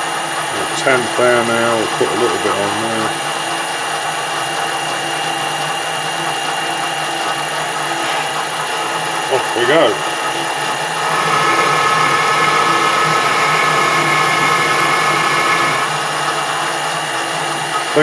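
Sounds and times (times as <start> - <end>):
lathe whine: 0.0 - 18.0
metal lathe hum: 10.0 - 17.8.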